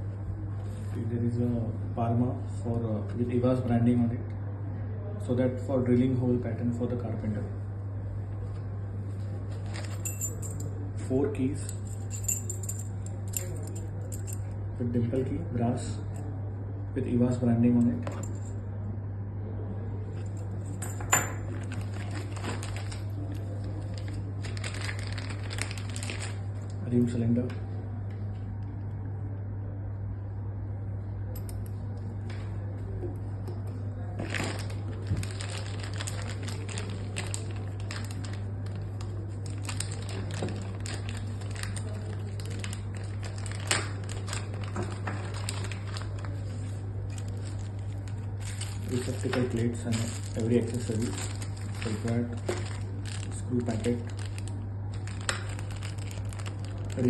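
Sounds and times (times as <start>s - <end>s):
steady low hum: 0.0s - 57.0s
packaging crinkling: 9.5s - 10.7s, 21.4s - 26.8s, 34.2s - 57.0s.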